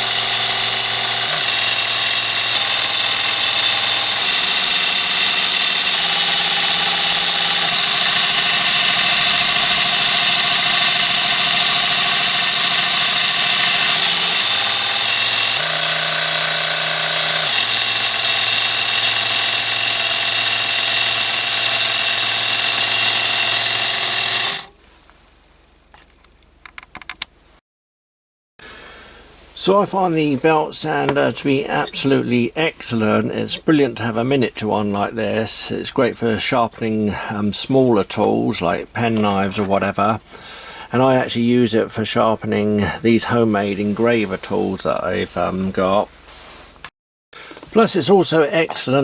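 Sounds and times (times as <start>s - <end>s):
belt sander motor running: 0.0s - 24.7s, 29.6s - 34.1s.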